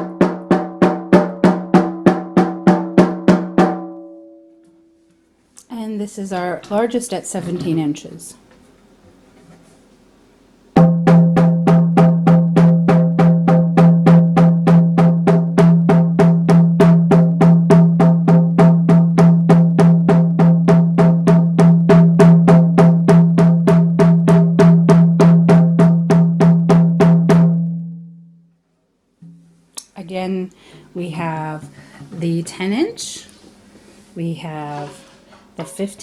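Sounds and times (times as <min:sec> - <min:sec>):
hand drum beating: 0:00.0 - 0:04.2, 0:10.8 - 0:27.9.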